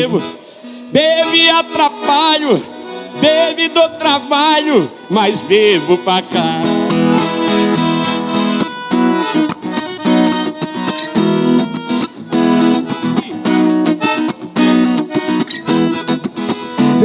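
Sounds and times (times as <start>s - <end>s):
plucked acoustic guitars: 5.0s - 17.0s.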